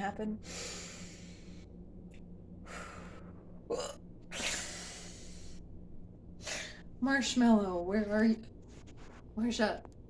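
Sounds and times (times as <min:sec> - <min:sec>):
woman breathing: 0:00.4 - 0:01.8, 0:02.6 - 0:03.6, 0:04.4 - 0:05.7
woman hiccuping: 0:03.7 - 0:04.5.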